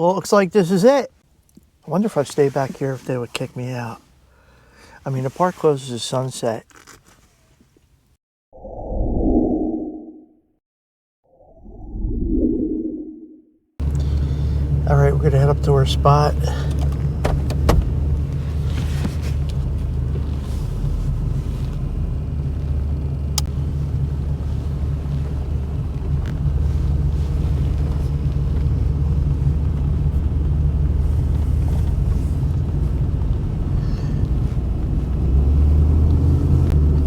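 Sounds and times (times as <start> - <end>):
truck engine and road noise: 13.8 - 37.0.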